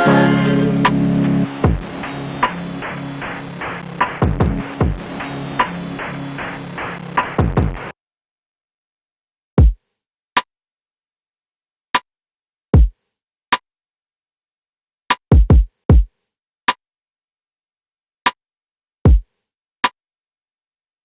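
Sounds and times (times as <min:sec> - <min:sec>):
deep kick drum thuds: 0:01.5 - 0:06.8, 0:15.4 - 0:16.1.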